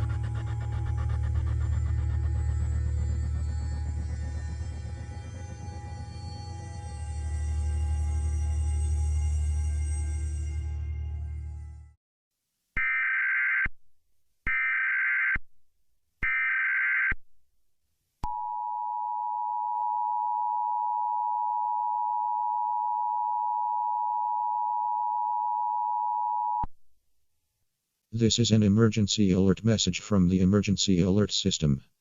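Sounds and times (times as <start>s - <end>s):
steady dual tone: 0.0s - 11.9s.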